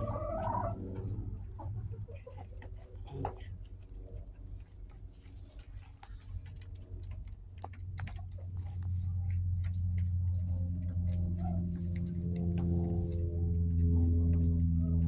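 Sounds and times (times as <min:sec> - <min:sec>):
hens tapping and scratching: 0:00.0 - 0:15.0
low steady hum: 0:00.0 - 0:15.0.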